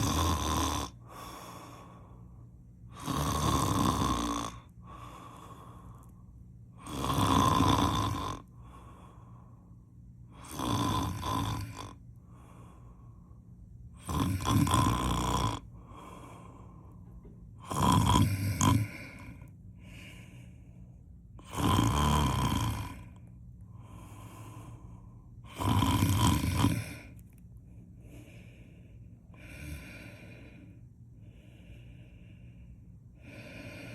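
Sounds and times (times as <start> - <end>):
person snoring loudly: 0.0 - 1.7, 2.9 - 5.6, 6.8 - 9.0, 10.3 - 12.5, 14.0 - 16.4, 17.6 - 20.2, 21.4 - 23.2, 23.8 - 27.2, 29.4 - 30.7
quiet breathing out: 0.0 - 21.6, 22.4 - 33.9.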